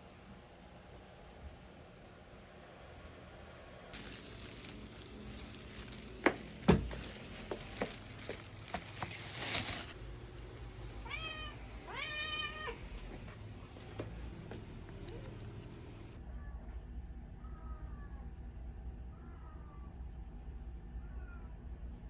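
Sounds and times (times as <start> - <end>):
cat meowing: 11.0 - 12.8.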